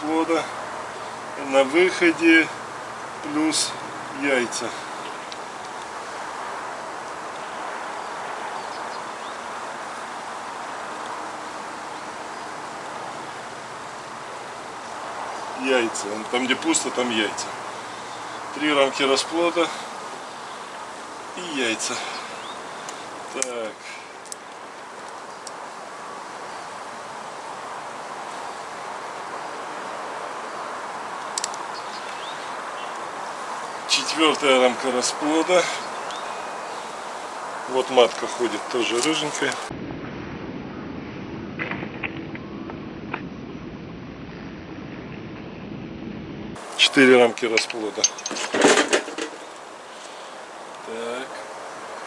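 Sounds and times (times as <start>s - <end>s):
honeybees buzzing: 0.0s - 39.7s, 46.6s - 52.0s
hive frames clicking: 22.1s - 25.6s, 31.2s - 32.4s, 37.8s - 39.7s, 46.6s - 50.9s.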